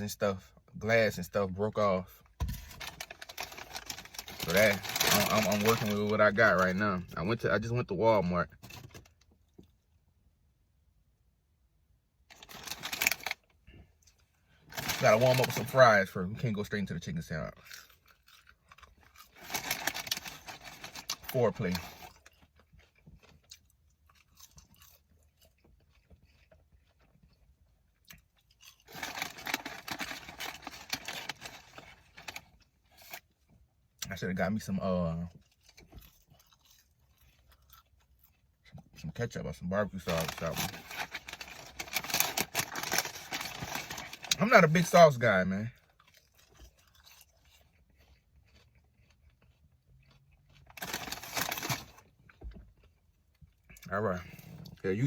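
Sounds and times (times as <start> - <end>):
person chewing fries: 2.1 - 7.2, 12.2 - 16.6, 17.3 - 55.0
loud crunching: 2.7 - 6.8.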